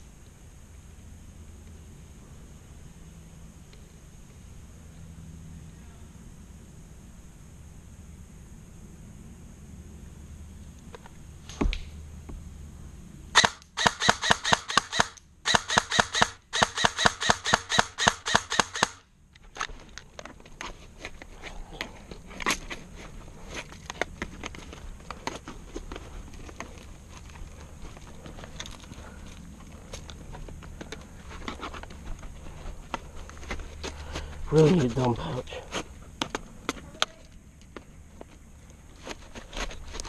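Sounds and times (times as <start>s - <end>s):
airsoft gun shots: 13.4s - 19.0s.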